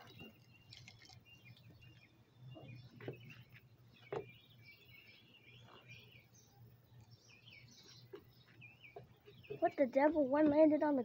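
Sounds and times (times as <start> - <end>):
faint birds chirping: 0.0 - 11.0.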